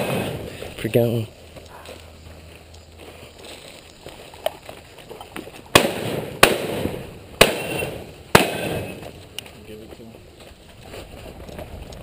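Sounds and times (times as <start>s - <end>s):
shotgun shots echoing: 0.0s - 0.5s, 5.7s - 9.2s.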